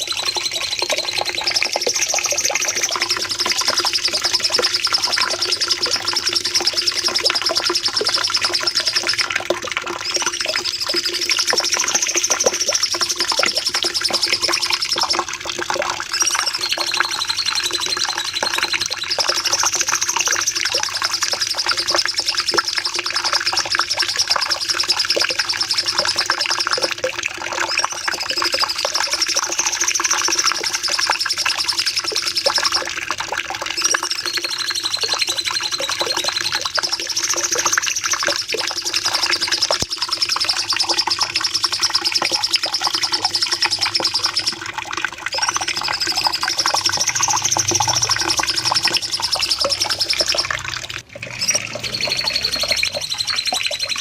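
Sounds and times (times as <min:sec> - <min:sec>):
bird singing rapid high trill: 0:00.0 - 0:09.3, 0:16.1 - 0:20.6, 0:33.8 - 0:44.6, 0:45.3 - 0:54.0.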